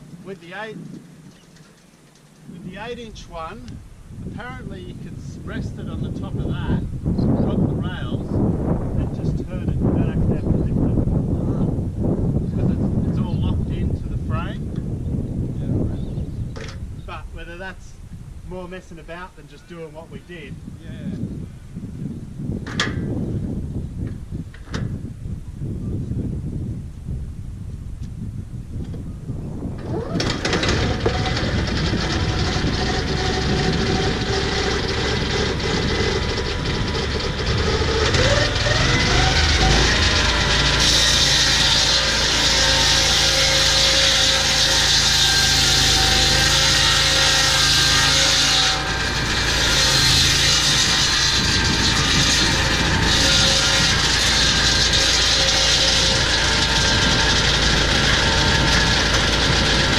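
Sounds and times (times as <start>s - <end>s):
petrol engine starting and revving: 29.8s - 59.9s
saw cutting through log: 29.8s - 59.9s.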